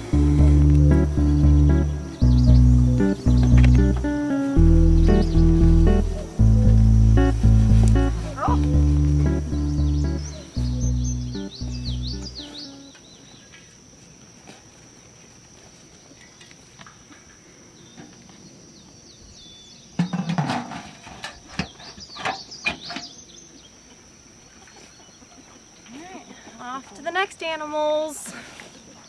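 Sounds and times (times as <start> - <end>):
birds chirping: 0.0 - 13.5
high insect trill: 0.0 - 17.1.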